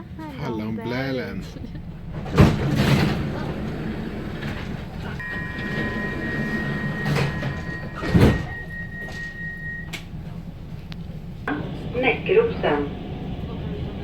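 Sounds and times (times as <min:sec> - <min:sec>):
train low rumble: 0:00.0 - 0:14.0
train high whine: 0:03.6 - 0:14.0.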